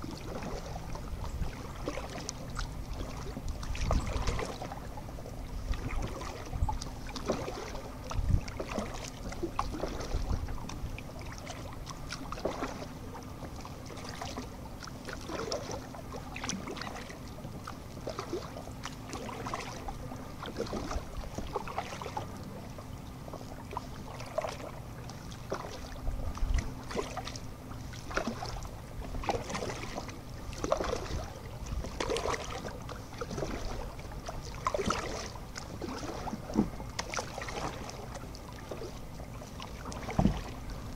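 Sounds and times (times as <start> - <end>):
paddle splashes and drips: 0.0 - 40.9
wind buffeting microphone: 8.0 - 8.6.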